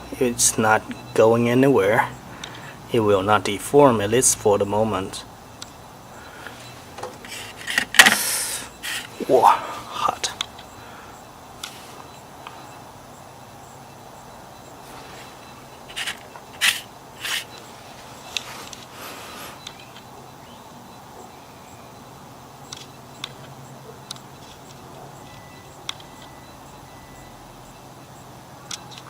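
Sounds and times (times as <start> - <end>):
watch scraping: 6.4 - 9.4, 14.6 - 19.7
soft rustle: 11.6 - 12.7, 14.8 - 19.6.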